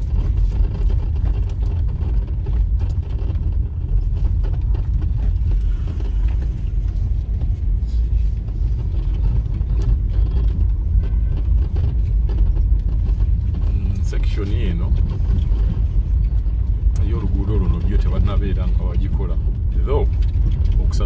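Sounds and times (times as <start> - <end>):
vehicle engine and road rumble: 0.0 - 21.0.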